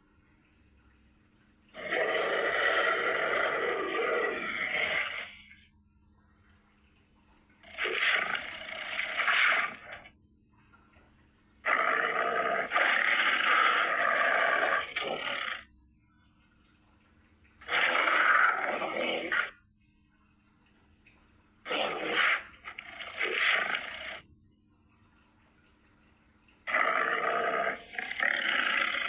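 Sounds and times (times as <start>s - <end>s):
hissing monster roar: 1.8s - 5.5s, 7.6s - 10.1s, 11.6s - 15.7s, 17.6s - 19.6s, 21.7s - 24.2s, 26.7s - 29.0s.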